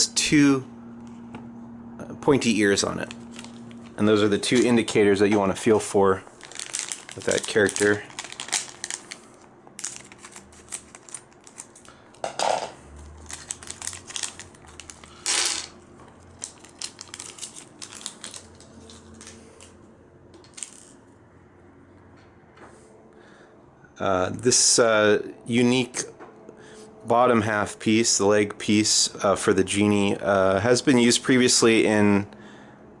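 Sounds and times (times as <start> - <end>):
plastic packet crinkling: 2.5 - 4.9, 5.5 - 12.2, 13.0 - 19.7.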